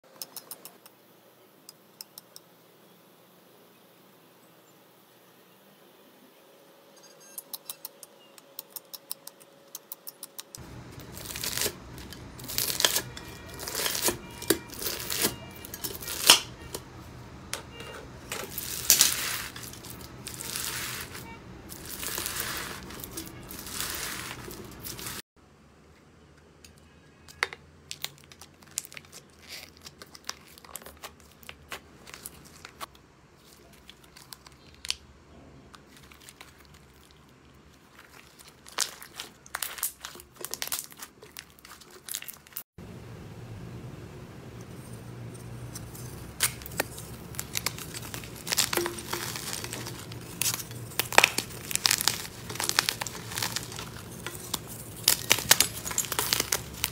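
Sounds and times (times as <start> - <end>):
slime crackling and popping: 10.8 - 16.8, 18.4 - 25.2, 27.9 - 35.0, 35.8 - 42.6, 46.4 - 56.9
slime squishing: 10.8 - 16.8, 18.3 - 25.2, 27.9 - 35.0, 35.8 - 42.6, 46.4 - 56.9.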